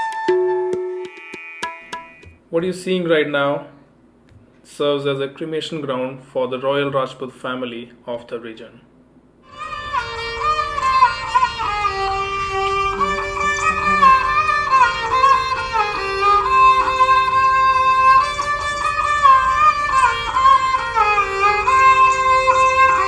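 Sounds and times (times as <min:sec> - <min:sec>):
bowed string instrument melody: 0:09.5 - 0:23.0.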